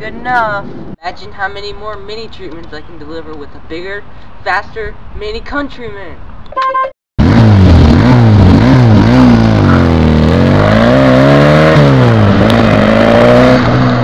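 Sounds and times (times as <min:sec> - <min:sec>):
car engine revving and accelerating: 0:07.2 - 0:14.0.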